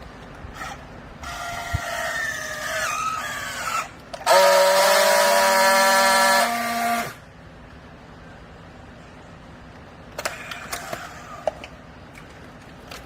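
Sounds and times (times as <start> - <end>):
hydraulic power unit whining: 0.1 - 7.5.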